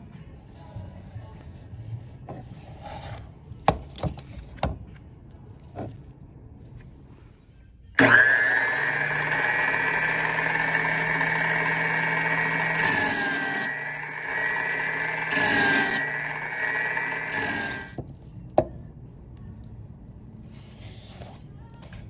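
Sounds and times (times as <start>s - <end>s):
knife sharpener grinding blade: 8.9s - 18.0s.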